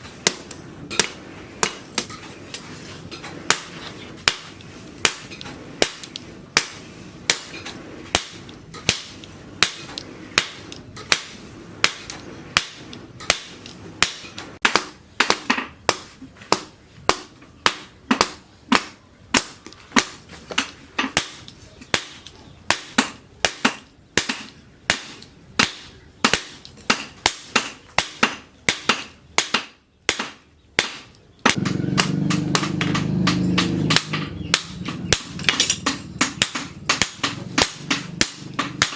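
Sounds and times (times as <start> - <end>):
hammer striking steel on anvil: 0.2 - 2.2, 3.5 - 38.9
steady low rumble: 3.4 - 14.6, 31.6 - 38.9.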